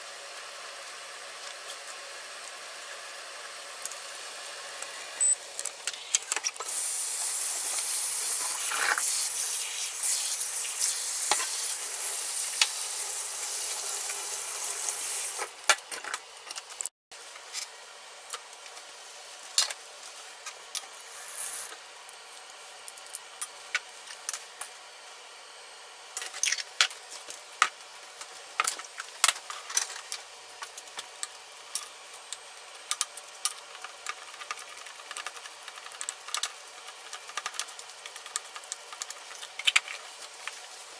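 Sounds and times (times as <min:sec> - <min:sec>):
food sizzling in a frying pan: 0:06.6 - 0:15.5.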